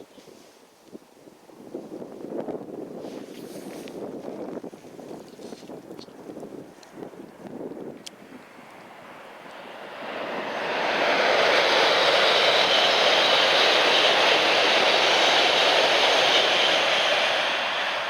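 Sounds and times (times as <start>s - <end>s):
bullet train passing: 8.3s - 18.0s.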